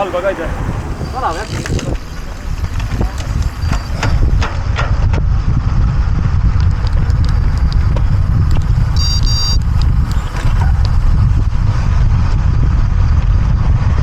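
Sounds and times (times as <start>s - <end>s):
wind buffeting microphone: 0.0s - 14.0s
brief high-pitched tone: 9.0s - 9.6s.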